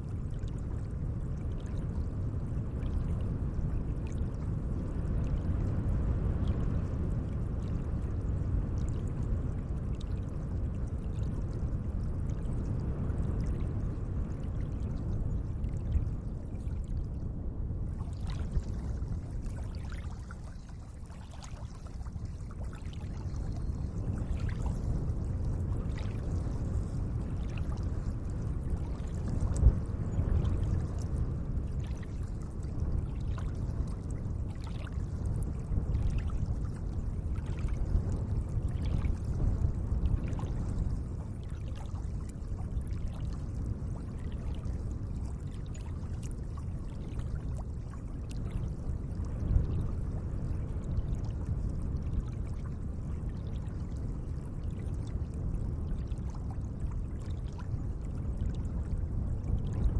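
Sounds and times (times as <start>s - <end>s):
small water splashes and drips: 0.0s - 59.9s
lake water washing: 17.9s - 29.6s.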